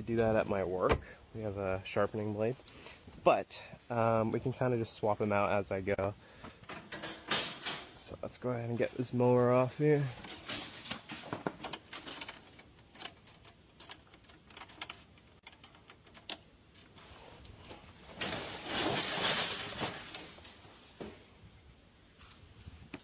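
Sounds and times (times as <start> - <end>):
lawn mower clicks and knocks: 10.2 - 16.5.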